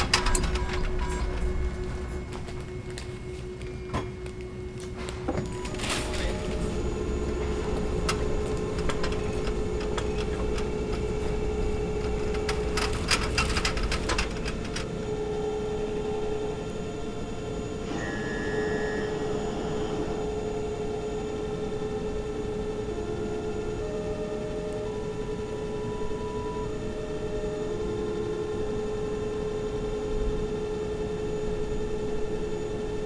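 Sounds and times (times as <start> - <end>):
machine low hum: 0.0 - 33.0
brief high tone: 17.8 - 20.2.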